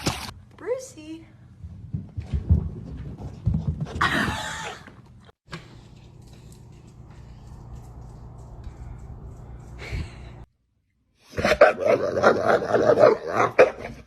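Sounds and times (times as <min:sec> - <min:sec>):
dog barking and yipping: 0:11.4 - 0:14.0.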